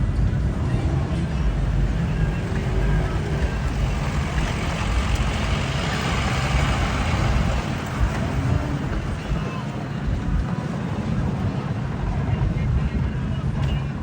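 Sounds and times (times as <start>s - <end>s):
rushing noise: 0.0s - 14.0s
vehicle engine rumbling: 0.0s - 14.0s.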